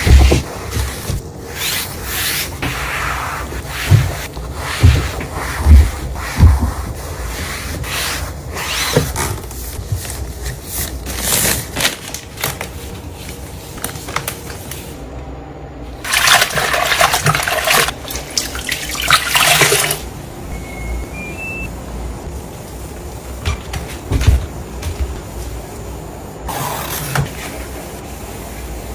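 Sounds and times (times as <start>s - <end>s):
short rising beeps: 20.5s - 21.7s.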